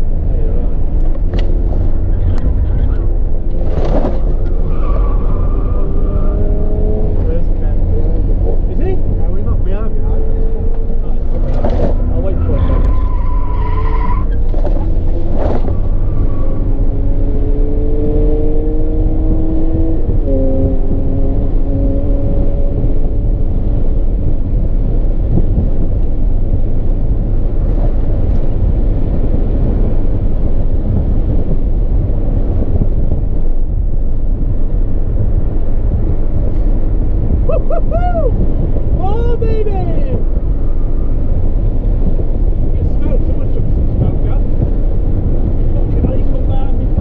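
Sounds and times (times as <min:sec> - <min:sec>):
car engine accelerating: 0:00.0 - 0:47.0
road and wind roar: 0:00.0 - 0:47.0.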